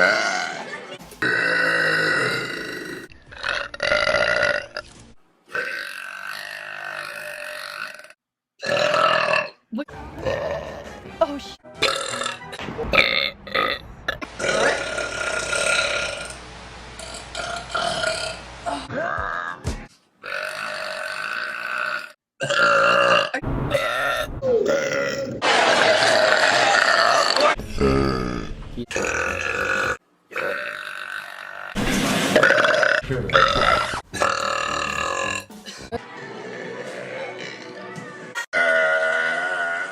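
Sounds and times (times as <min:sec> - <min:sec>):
woman burping: 0:00.0 - 0:04.7, 0:13.6 - 0:16.3, 0:20.3 - 0:25.3, 0:32.4 - 0:35.5
woman belching loudly: 0:00.0 - 0:04.8, 0:05.6 - 0:09.6, 0:11.8 - 0:12.4, 0:13.0 - 0:16.4, 0:20.2 - 0:25.3, 0:26.0 - 0:31.8, 0:32.4 - 0:35.5, 0:37.3 - 0:37.9, 0:38.5 - 0:39.9.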